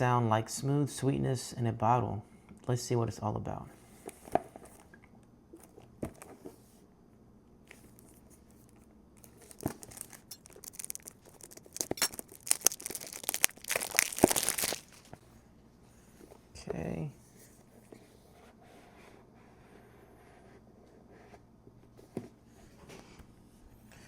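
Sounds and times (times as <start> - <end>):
packaging tearing and crinkling: 7.7 - 15.1.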